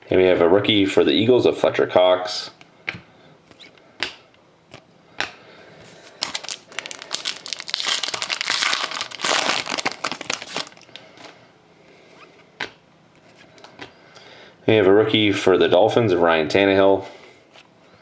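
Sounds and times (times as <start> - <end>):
card pack wrapper tearing and crinkling: 6.1 - 11.3.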